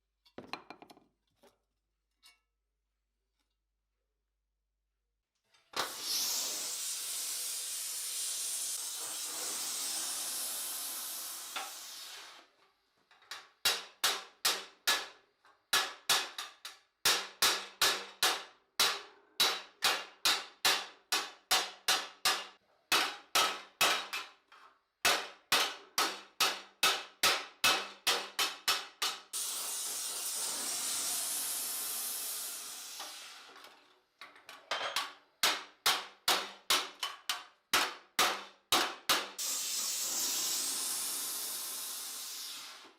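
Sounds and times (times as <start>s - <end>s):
steady high hiss: 39.4s - 42.9s.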